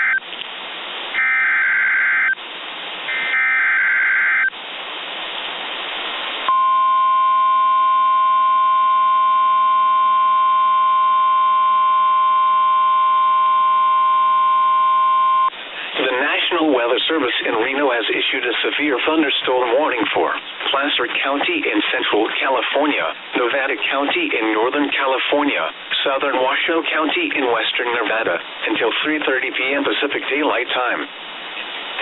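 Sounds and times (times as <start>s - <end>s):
radio static: 0.0s - 0.2s, 12.1s - 32.0s
steady warning alarm tone: 3.1s - 4.5s.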